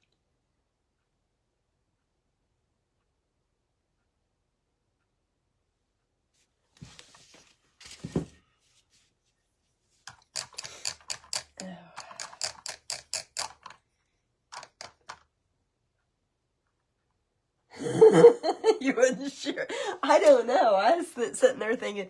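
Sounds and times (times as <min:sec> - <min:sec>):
quick irregular clicks and taps: 0:10.0 - 0:13.9, 0:14.5 - 0:15.3.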